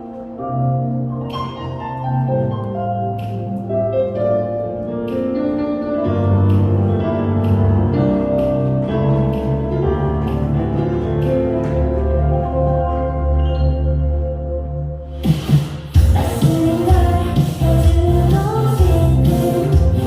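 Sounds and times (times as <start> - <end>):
bright keyboard melody: 0.0 - 15.3
bass line: 6.0 - 20.0.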